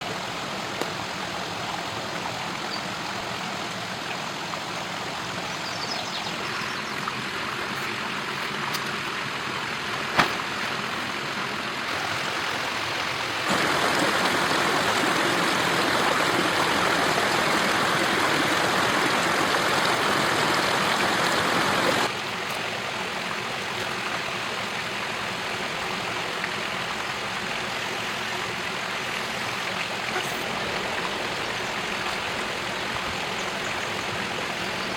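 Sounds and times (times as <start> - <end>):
stream water rushing: 0.0 - 34.9.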